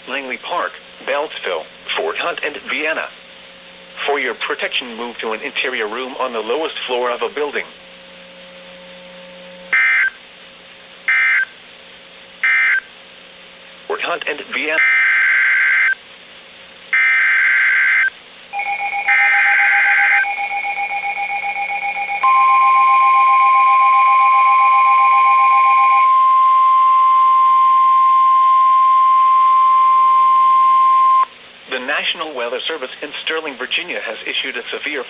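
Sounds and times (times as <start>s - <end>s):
steady warning alarm tone: 9.7s - 10.2s, 11.1s - 11.5s, 12.4s - 12.9s, 17.0s - 31.3s
pulsing electronic alarm beep: 17.0s - 31.3s.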